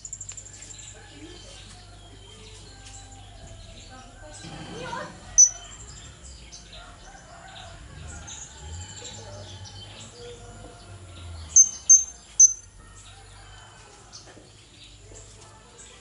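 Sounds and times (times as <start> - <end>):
soft bird twittering: 11.5 - 12.7.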